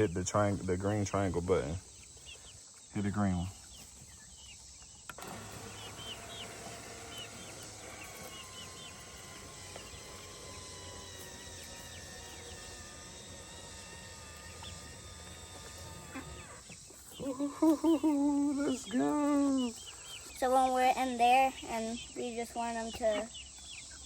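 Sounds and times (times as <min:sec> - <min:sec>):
bird chirps: 0:00.0 - 0:24.0
electric gear motor humming: 0:05.1 - 0:16.9.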